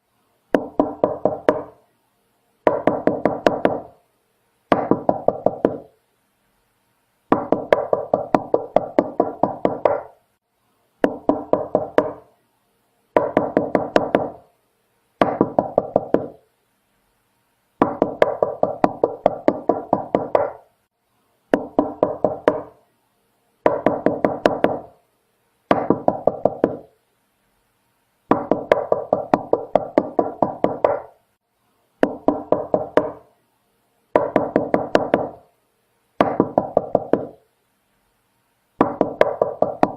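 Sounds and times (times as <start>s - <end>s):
knocking on a door: 0.5s - 1.8s, 2.7s - 3.9s, 4.7s - 5.9s, 7.3s - 10.1s, 11.0s - 12.2s, 13.2s - 14.4s, 15.2s - 16.4s, 17.8s - 20.6s, 21.5s - 22.8s, 23.6s - 24.9s, 25.7s - 26.9s, 28.3s - 31.1s, 32.0s - 33.2s, 34.2s - 35.4s, 36.2s - 37.4s, 38.8s - 39.9s.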